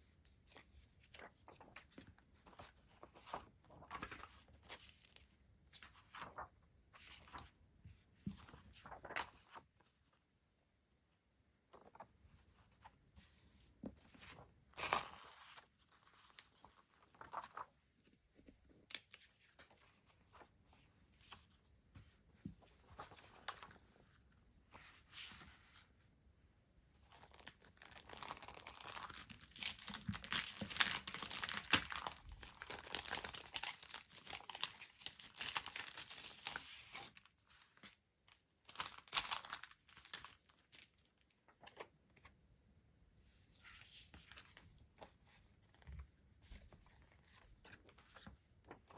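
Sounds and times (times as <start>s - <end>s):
packaging rustling and tearing: 27.2s - 37.2s, 38.7s - 41.2s.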